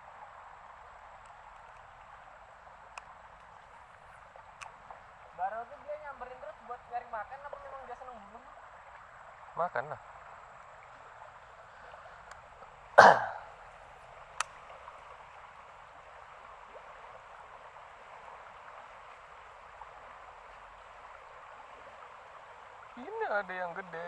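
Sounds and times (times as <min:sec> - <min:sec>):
flood water flowing: 0:00.0 - 0:24.0.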